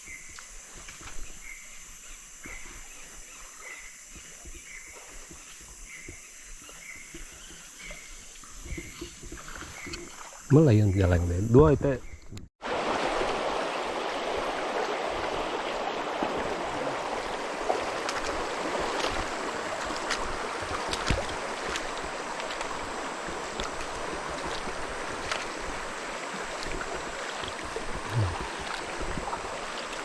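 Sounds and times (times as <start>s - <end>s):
river water flowing: 12.6s - 30.0s.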